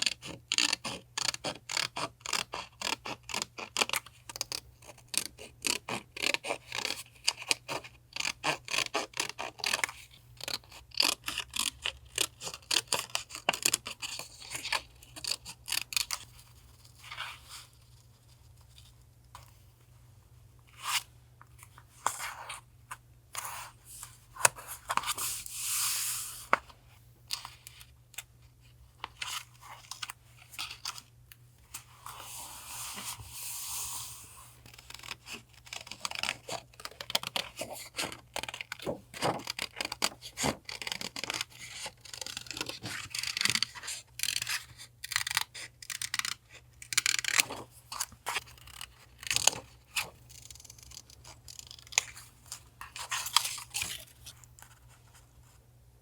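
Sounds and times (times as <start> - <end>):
paper rustling: 37.1 - 40.6.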